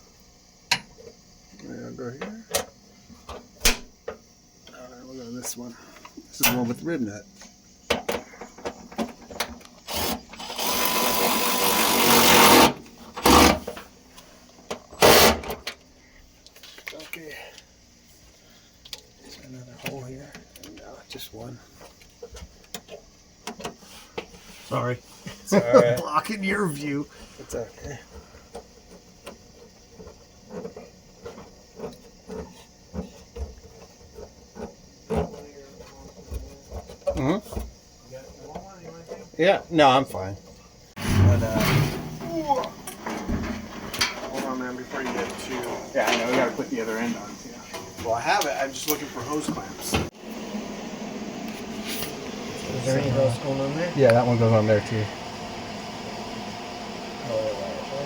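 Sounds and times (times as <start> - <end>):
power drill driving bolt: 9.9 - 13.8, 15.0 - 15.8
loud bumps: 41.0 - 45.6
car parts rattling: 41.0 - 48.0.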